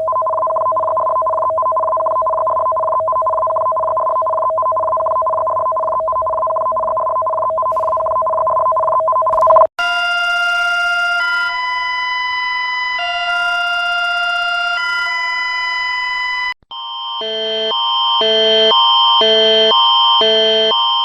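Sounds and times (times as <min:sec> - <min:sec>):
steady high tone: 0:09.4 - 0:16.5
two-pitch alarm chord: 0:09.8 - 0:20.7
rapidly alternating alarm chords: 0:09.8 - 0:21.0.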